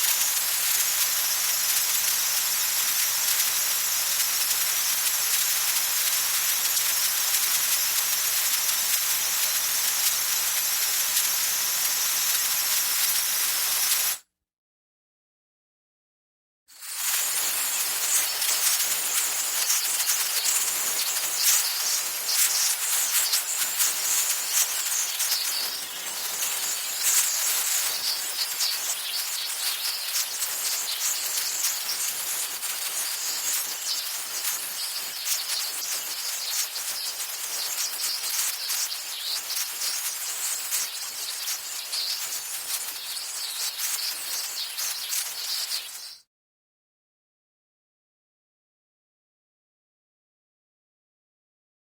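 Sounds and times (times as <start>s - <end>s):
compressed air hissing: 0.0s - 14.2s.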